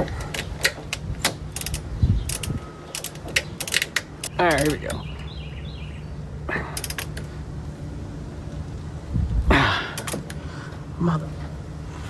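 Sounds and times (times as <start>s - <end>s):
torque wrench clunk and strain: 0.0s - 4.8s, 6.8s - 7.3s
light metal clicks: 0.0s - 5.4s, 6.7s - 7.3s, 10.0s - 10.4s
steady low hum: 0.0s - 12.0s.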